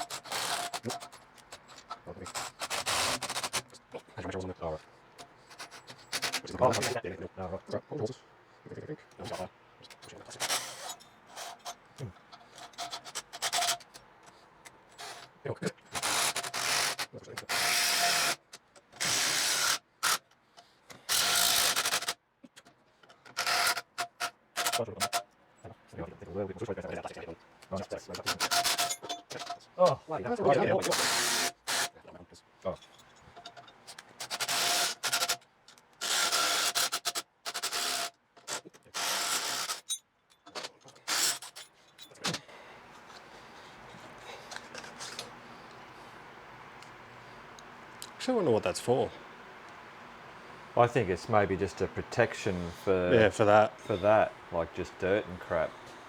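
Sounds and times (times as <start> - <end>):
rasping ratchet-like metal strokes: 0.0 - 3.8, 5.2 - 7.0, 10.3 - 14.0, 14.9 - 20.3, 20.9 - 22.2, 23.2 - 25.2, 28.2 - 29.6, 30.8 - 32.0, 33.4 - 35.4, 36.0 - 40.0, 40.9 - 41.6.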